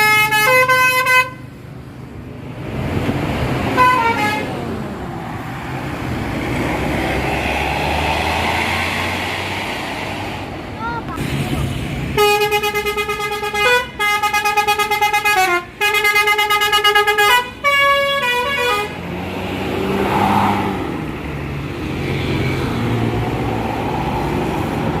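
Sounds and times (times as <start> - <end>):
musical air horn tune: 3.8 - 4.5, 12.2 - 18.9.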